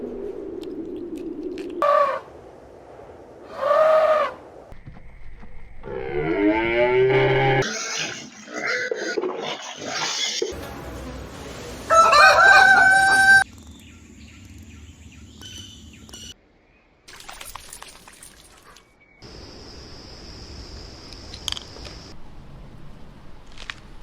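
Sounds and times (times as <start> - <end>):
rooster crowing: 11.9 - 13.4.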